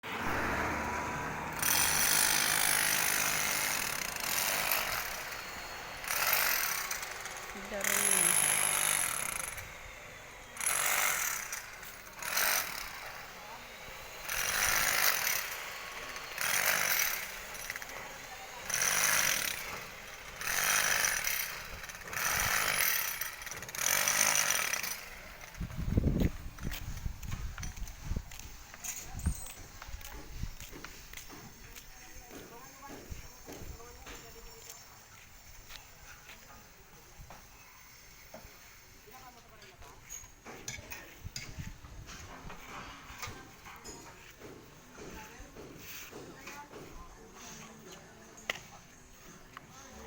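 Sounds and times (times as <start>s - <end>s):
low engine hum: 0.0s - 1.6s
harsh hissing power tool: 0.1s - 25.6s.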